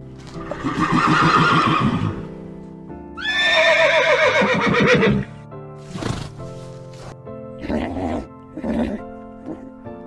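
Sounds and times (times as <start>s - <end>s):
background music: 0.0s - 10.0s
horse whinnying: 0.4s - 2.3s, 3.2s - 6.6s, 7.6s - 9.7s.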